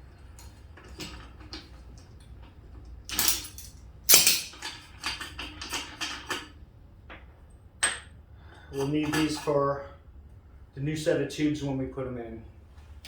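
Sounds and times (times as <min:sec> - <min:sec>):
metal parts clinking and clattering: 0:02.7 - 0:06.5
sharp metal clank: 0:03.1 - 0:04.6.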